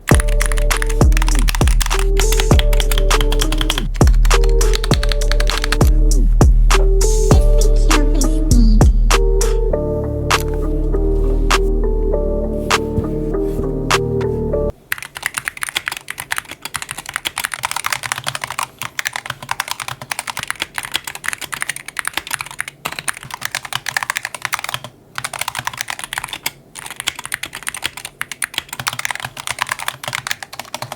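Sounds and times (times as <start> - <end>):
fast typing on keyboard: 0.0 - 6.1, 14.8 - 30.9
brief music: 0.1 - 14.7.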